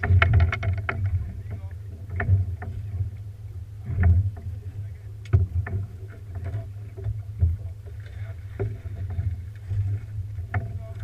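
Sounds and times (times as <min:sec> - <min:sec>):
knocks and thumps: 0:00.0 - 0:03.1, 0:05.3 - 0:07.7
boat low hum: 0:00.0 - 0:11.0.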